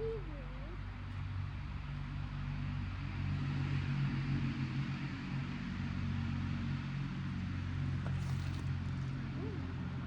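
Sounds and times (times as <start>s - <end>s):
low mechanical hum: 0.0s - 4.2s, 6.8s - 10.0s.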